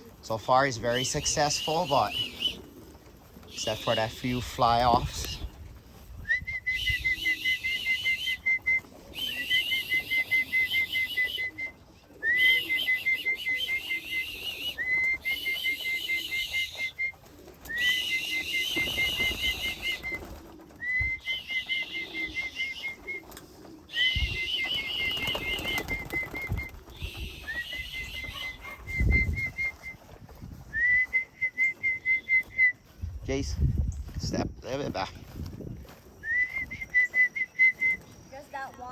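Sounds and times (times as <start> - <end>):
person whistling warbling call: 6.3 - 20.2, 20.8 - 23.2, 23.9 - 30.0, 30.7 - 32.8.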